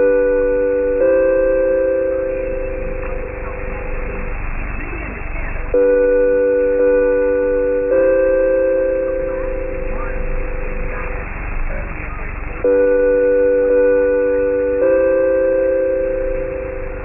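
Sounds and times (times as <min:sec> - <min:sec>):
radio static: 0:02.2 - 0:05.8, 0:08.9 - 0:12.7.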